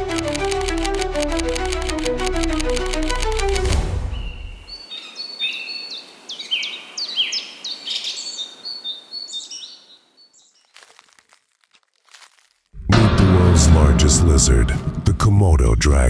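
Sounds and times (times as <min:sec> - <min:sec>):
music: 0:00.0 - 0:04.2
birds chirping: 0:04.1 - 0:10.6.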